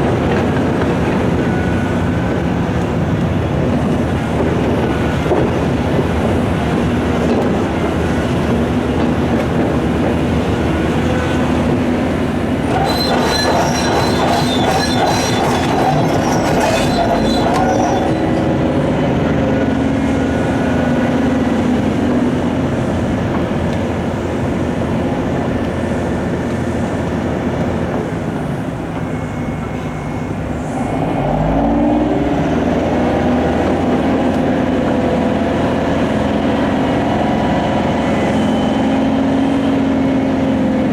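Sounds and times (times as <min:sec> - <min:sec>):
excavator engine and hydraulics: 0:00.0 - 0:40.9
high metallic squealing: 0:12.6 - 0:19.0.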